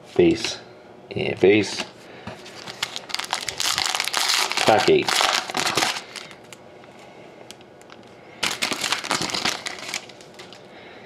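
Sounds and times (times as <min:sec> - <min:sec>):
foil wrapper crinkling: 0:02.4 - 0:06.6, 0:07.8 - 0:10.6.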